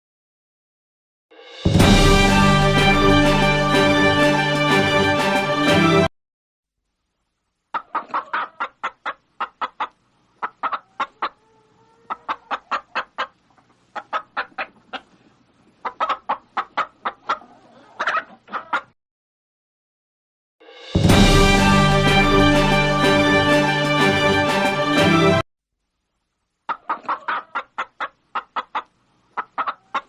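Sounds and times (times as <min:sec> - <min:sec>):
music: 0:01.3 - 0:06.1, 0:20.6 - 0:25.4
hen clucking: 0:07.7 - 0:19.0, 0:26.6 - 0:30.0.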